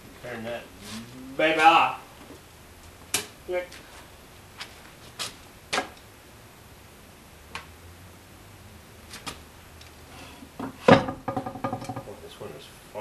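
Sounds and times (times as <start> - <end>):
loud knock: 10.6 - 12.0.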